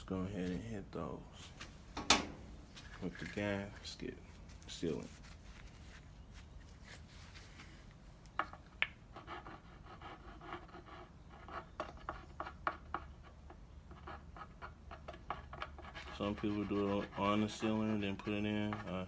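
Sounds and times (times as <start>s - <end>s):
soft scratching and rubbing: 2.5s - 8.2s, 13.9s - 19.0s.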